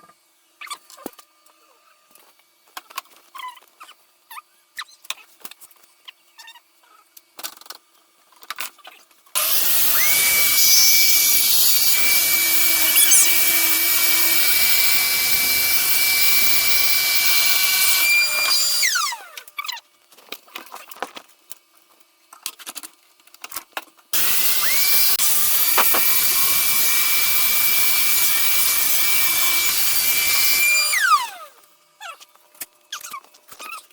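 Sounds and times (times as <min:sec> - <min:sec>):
electric saw whining: 0:09.4 - 0:19.5, 0:24.2 - 0:31.6.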